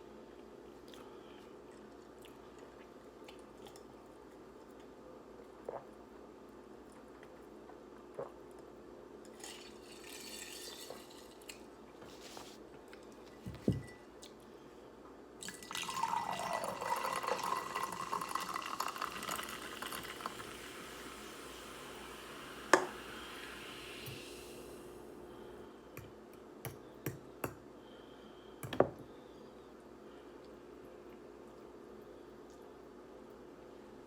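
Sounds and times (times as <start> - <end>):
liquid poured into glass: 9.4 - 11.5, 15.4 - 24.5.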